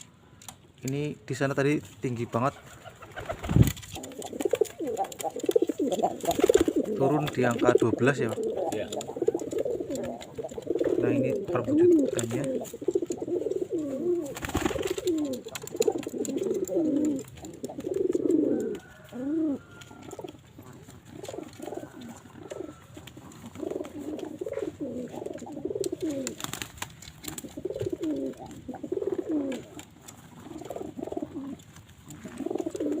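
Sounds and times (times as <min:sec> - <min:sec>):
pigeons cooing: 0:02.2 - 0:33.0.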